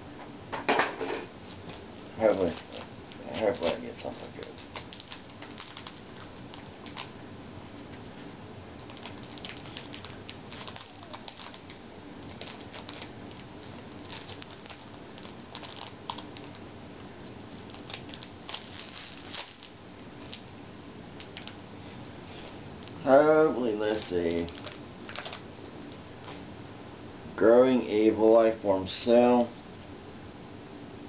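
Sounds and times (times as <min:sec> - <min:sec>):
foil pack rustling and crinkling: 0:01.5 - 0:07.2, 0:08.8 - 0:20.5, 0:21.2 - 0:25.5.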